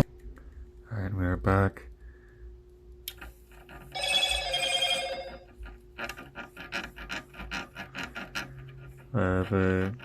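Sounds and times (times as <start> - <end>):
high electronic ringing tone: 3.9 - 5.5.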